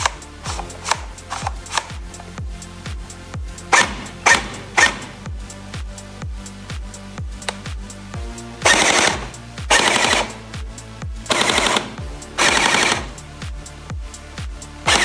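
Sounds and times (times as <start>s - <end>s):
background music with steady beat: 0.0s - 15.0s
toy blaster firing full auto: 3.7s - 5.1s, 8.7s - 10.4s, 11.3s - 13.2s.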